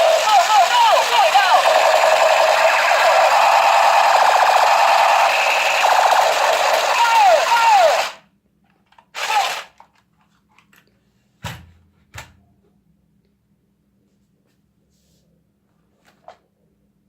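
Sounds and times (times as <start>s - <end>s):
electronic toy gunfire: 0.0s - 8.2s, 9.2s - 9.7s.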